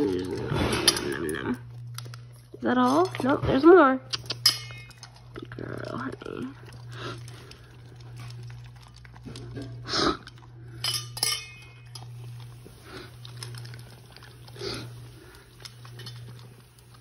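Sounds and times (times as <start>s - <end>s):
puppy food clinking in bowl: 2.8s - 5.6s, 10.7s - 12.3s.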